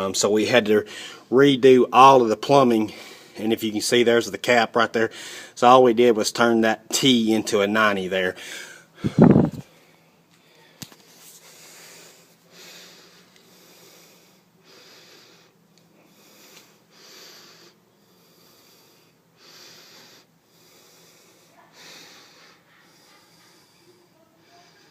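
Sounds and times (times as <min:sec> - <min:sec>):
person breathing: 0:00.9 - 0:01.3, 0:05.1 - 0:05.6, 0:08.4 - 0:24.9.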